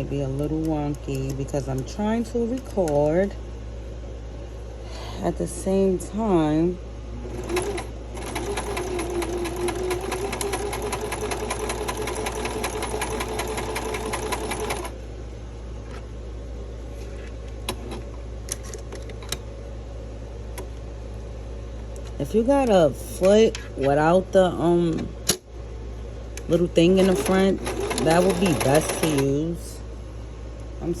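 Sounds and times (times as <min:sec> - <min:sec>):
sewing machine running fast: 0:07.3 - 0:14.9, 0:27.0 - 0:29.2.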